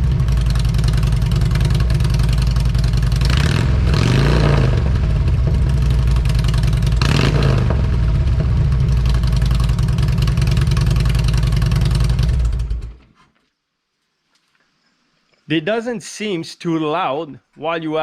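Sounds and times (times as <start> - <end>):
motorcycle engine idling: 0.0 - 13.0.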